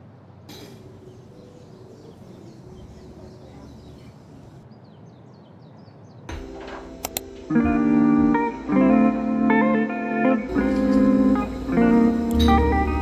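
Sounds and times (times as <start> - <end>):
outdoor background noise: 0.0 - 13.0
faint bird chirps: 0.5 - 5.9
sharp clicks: 6.3 - 7.8
loud guitar music: 6.3 - 13.0.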